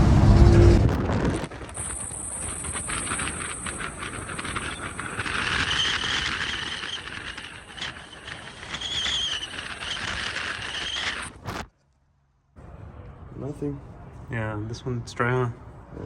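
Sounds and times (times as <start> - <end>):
car running: 0.0 - 11.4
whine: 0.0 - 11.6.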